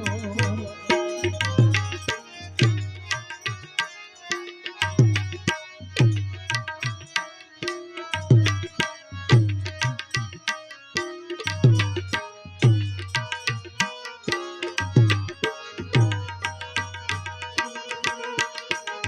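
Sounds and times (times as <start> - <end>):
hand drum rhythm: 0.0 - 3.2, 7.7 - 10.3, 11.0 - 19.0
sustained melody line: 0.0 - 3.6.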